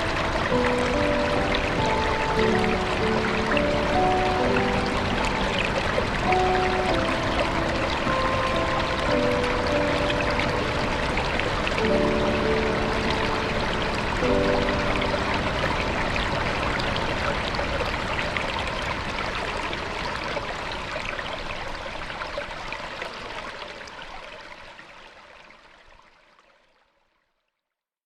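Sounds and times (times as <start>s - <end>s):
waterfall rushing: 0.0s - 22.1s.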